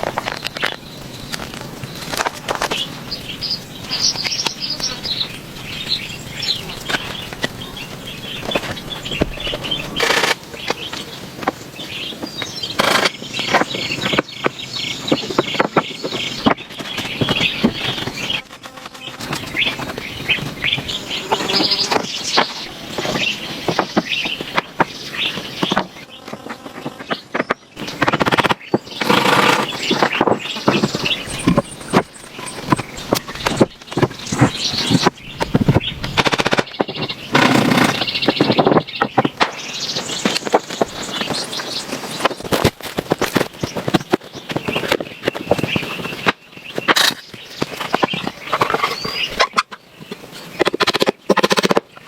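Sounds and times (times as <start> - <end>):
birds chirping: 0.0 - 52.0
irregular knocks and rustles: 8.4 - 51.4.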